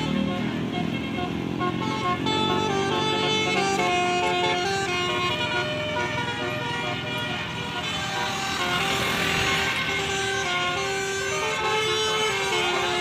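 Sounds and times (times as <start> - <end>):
multi-tone horn playing a melody: 0.0 - 13.0.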